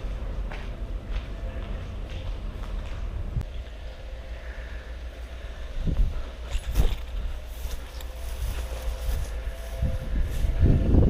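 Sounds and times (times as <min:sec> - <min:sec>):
wind buffeting microphone: 0:05.6 - 0:11.0.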